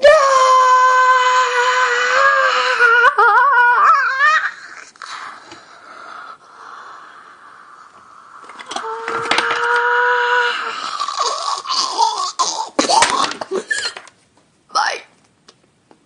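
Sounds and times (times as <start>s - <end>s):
high-pitched cry: 0.0s - 5.2s, 8.8s - 14.0s.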